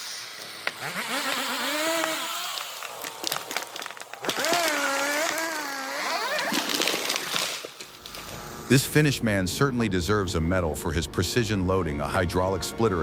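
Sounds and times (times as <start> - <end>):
chainsaw revving: 0.0 - 8.8.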